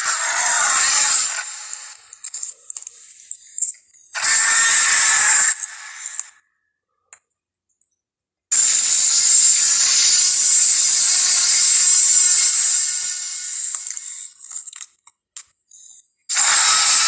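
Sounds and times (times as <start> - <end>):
dinosaur roar sound effect: 0.0 - 1.5, 4.2 - 5.8
small clicks and rattles: 13.7 - 15.8.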